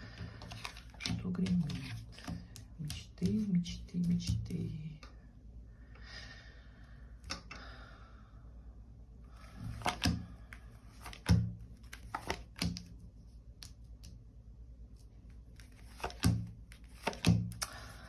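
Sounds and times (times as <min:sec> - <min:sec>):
cards slapping on a table: 0:09.7 - 0:10.2, 0:11.0 - 0:12.9, 0:15.7 - 0:17.8.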